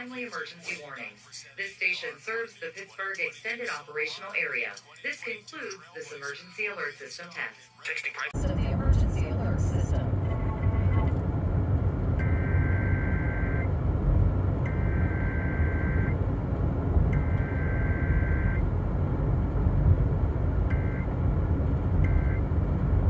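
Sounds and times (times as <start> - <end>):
low rumbling noise: 8.4 - 23.0.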